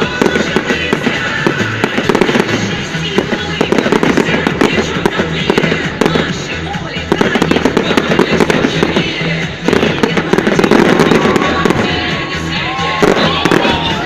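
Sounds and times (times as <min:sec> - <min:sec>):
fireworks bangs and crackles: 0:00.0 - 0:14.0
music with pulsing bass beat: 0:00.0 - 0:14.0.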